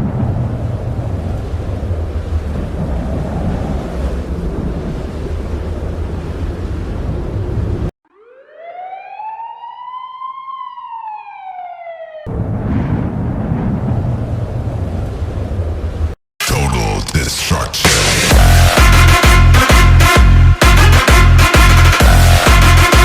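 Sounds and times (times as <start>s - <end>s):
tornado wind roar: 0.0s - 7.9s, 12.3s - 16.2s
tornado warning siren wail: 0.0s - 15.5s.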